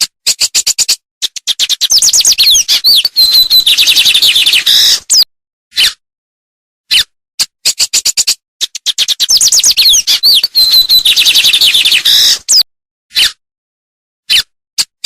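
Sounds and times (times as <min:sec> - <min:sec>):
songbird singing: 0:01.5 - 0:05.2, 0:09.0 - 0:12.6.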